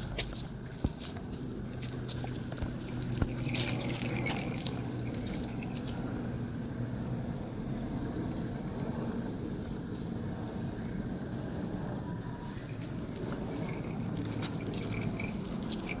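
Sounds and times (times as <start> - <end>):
cicadas droning: 0.0 - 16.0.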